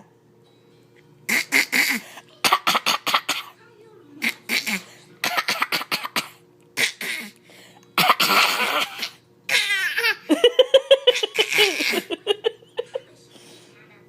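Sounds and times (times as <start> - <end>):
person fake-coughing: 1.3 - 3.6, 4.2 - 7.4, 8.0 - 12.2.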